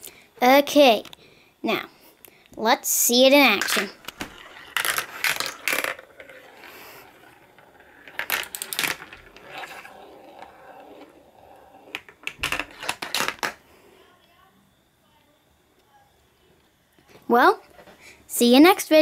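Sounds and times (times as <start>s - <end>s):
marble rolling and clattering: 3.5s - 13.6s.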